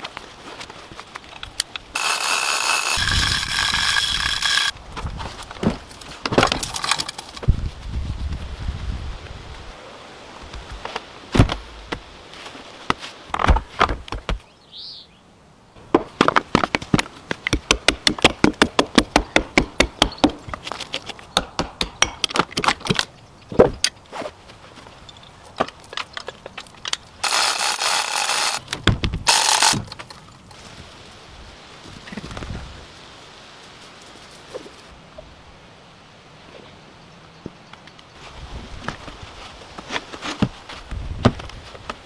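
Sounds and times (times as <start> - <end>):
harsh scraping: 2.0 - 4.7, 27.2 - 28.6
hand tools knocking wood: 17.5 - 20.6, 21.4 - 22.6.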